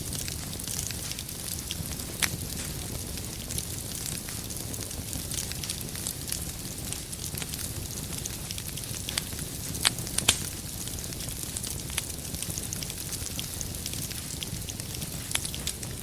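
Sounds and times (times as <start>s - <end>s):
fire sharp pops: 0.0s - 16.0s
wood fire crackling: 0.0s - 16.0s.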